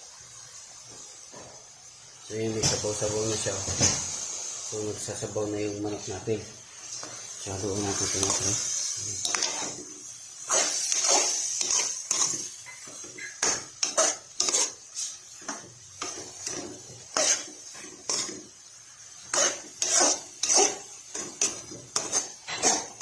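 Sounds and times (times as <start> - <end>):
utensil scraping a pan: 7.8 - 9.9, 10.5 - 18.5, 19.2 - 23.0.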